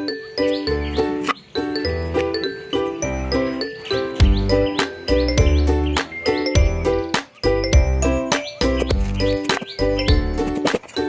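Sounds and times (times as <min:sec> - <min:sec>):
bell-like melody over bass beat: 0:03.1 - 0:10.4.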